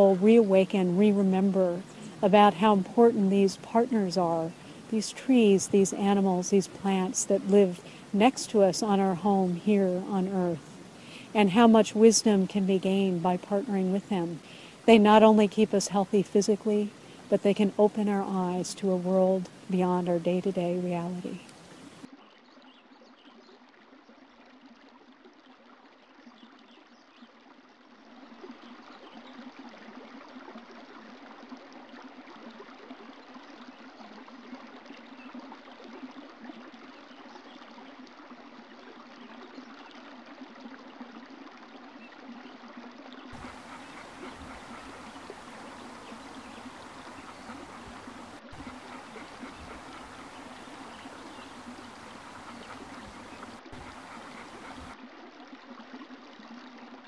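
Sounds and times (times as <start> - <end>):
stream babbling: 0.0 - 57.0.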